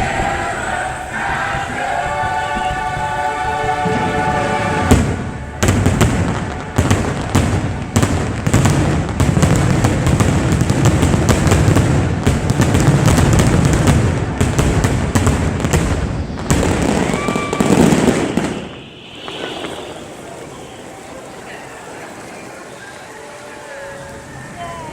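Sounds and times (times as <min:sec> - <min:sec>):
fireworks bangs and crackles: 0:03.8 - 0:21.8.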